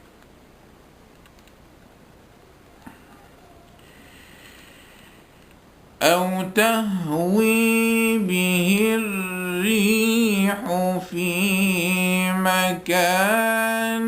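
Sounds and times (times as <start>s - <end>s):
faint hiss: 0.0s - 14.0s
man reciting in melodic chant: 6.0s - 14.0s.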